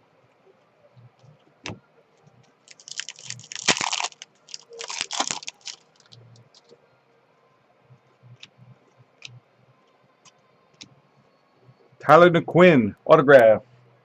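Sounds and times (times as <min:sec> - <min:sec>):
wrapper crinkling: 0:02.6 - 0:06.7.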